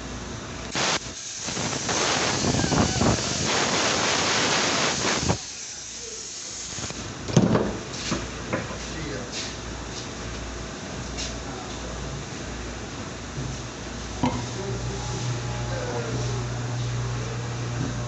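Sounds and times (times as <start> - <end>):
pressurised hiss: 0.7 - 7.0.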